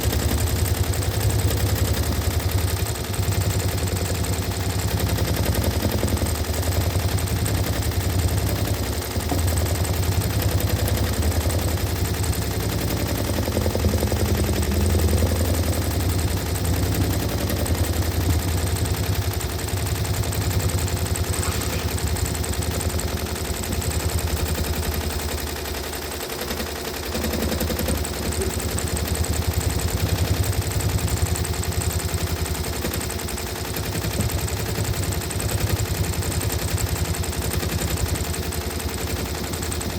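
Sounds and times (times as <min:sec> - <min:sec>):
sewing machine stitching: 0:00.0 - 0:39.9.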